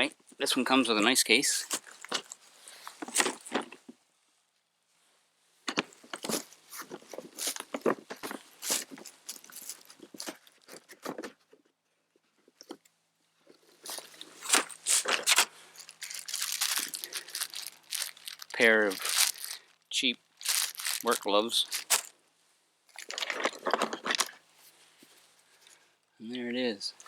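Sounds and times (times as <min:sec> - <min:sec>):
plastic packaging crinkling: 0:01.6 - 0:03.8, 0:05.8 - 0:11.4, 0:13.7 - 0:22.1, 0:22.9 - 0:24.4.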